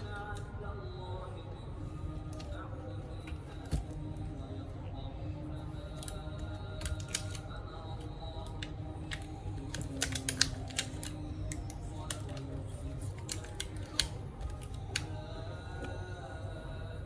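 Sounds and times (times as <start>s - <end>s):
clicks of small laptop parts: 8.6s - 12.5s.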